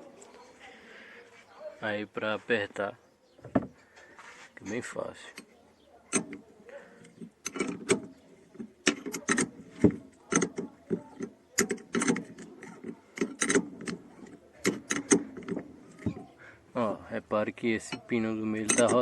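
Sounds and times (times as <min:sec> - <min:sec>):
wrench metallic clicks: 0:06.1 - 0:06.4, 0:07.1 - 0:16.2, 0:17.8 - 0:19.0.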